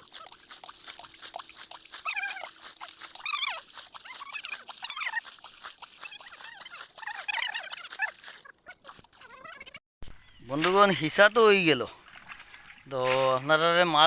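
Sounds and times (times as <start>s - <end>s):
rapid small clicks and pattering: 0.0s - 9.8s
animal whining calls: 2.0s - 2.6s.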